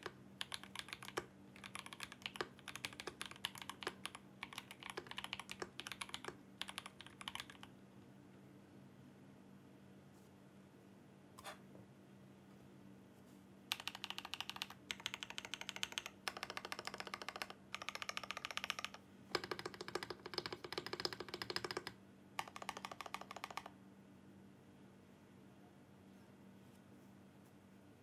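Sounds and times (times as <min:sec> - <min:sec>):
mechanical keyboard clacking: 0:00.0 - 0:07.7, 0:13.7 - 0:23.7
faint steady hum: 0:00.0 - 0:28.0.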